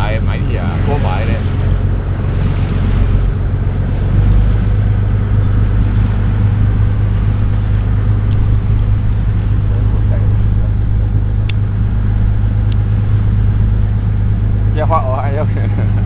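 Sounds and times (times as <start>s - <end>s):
boat engine droning: 0.0s - 16.0s.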